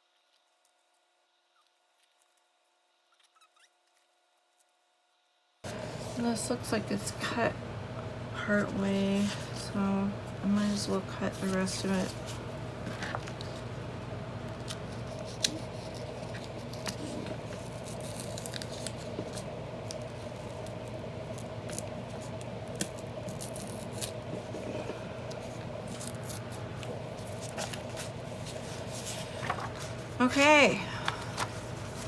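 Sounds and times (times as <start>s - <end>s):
steady low hum: 5.6s - 32.0s
paper binding being cut and torn: 14.6s - 19.4s, 21.3s - 24.4s.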